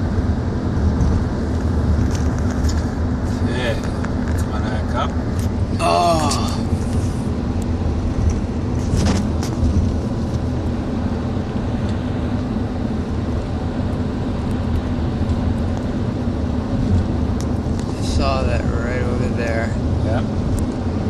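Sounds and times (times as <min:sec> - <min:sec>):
car engine and road drone: 0:00.0 - 0:21.0.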